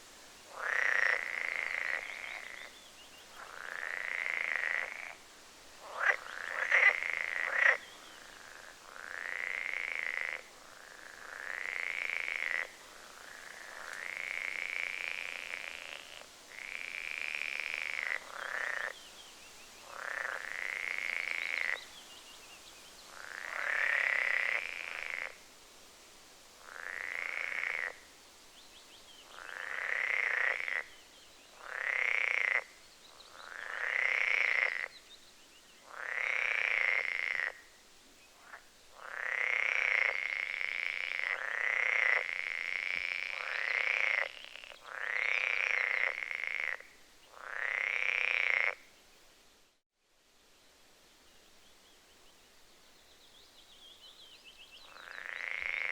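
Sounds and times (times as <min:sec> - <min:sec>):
frog croaking: 0:00.5 - 0:02.7, 0:03.4 - 0:05.2, 0:05.8 - 0:19.0, 0:19.8 - 0:21.8, 0:23.2 - 0:25.4, 0:26.6 - 0:28.1, 0:29.3 - 0:30.9, 0:31.5 - 0:34.9, 0:35.8 - 0:37.7, 0:38.4 - 0:48.9, 0:54.8 - 0:55.9.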